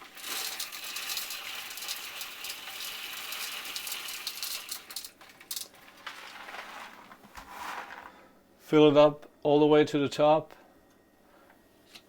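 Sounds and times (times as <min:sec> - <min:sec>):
salt pouring through a funnel: 0:00.0 - 0:08.1.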